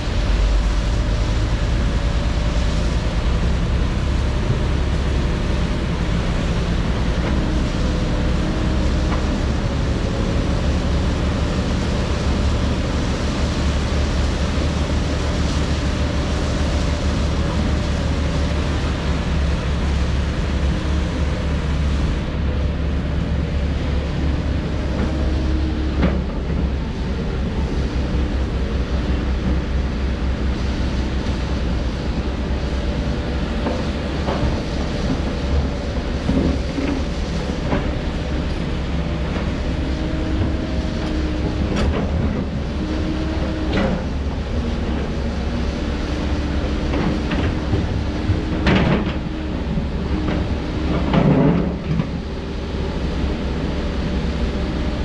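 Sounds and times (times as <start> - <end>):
heavy diesel machinery rumbling: 0.0 - 55.0.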